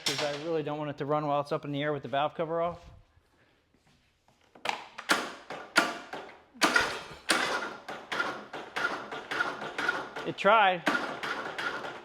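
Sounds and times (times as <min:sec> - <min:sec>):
electric starter cranking engine: 0:06.6 - 0:12.0.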